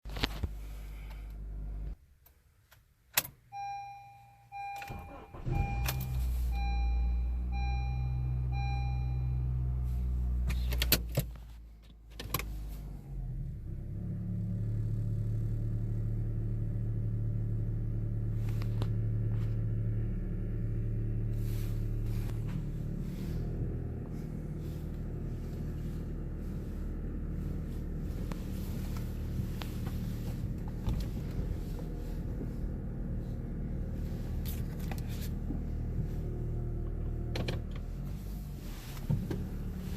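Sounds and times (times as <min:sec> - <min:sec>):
car engine low hum: 0:00.0 - 0:39.9
dashboard warning chime beeping: 0:03.5 - 0:09.8.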